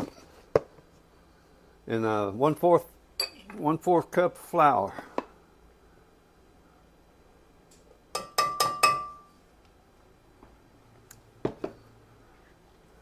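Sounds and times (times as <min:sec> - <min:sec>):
cookware clinking: 0:03.2 - 0:03.6, 0:08.2 - 0:09.3.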